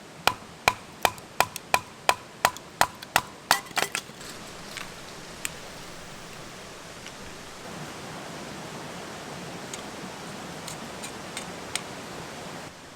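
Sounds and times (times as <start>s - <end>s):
river water rushing: 0.0s - 12.9s
tool strikes ringing: 0.3s - 6.6s.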